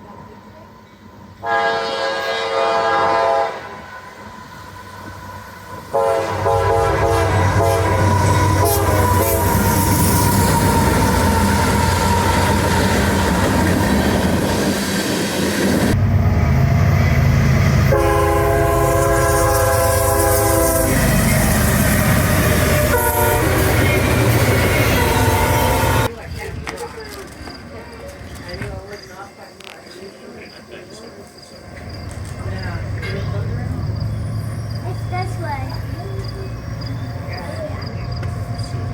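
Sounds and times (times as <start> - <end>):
train air horn blasts: 1.4 - 4.1, 5.9 - 13.6, 17.8 - 21.3, 22.3 - 26.1
train wheels rumbling and rattling: 3.8 - 38.9.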